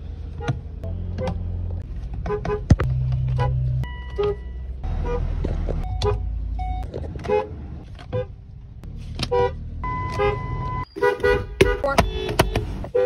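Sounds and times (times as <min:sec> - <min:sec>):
car horn toots: 0:09.3 - 0:13.0.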